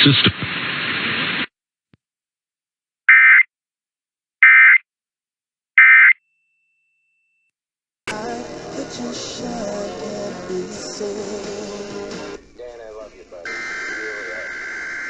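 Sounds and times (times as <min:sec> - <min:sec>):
programme audio: 0:08.1 - 0:15.0
buzzy digital data bursts: 0:13.0 - 0:15.0.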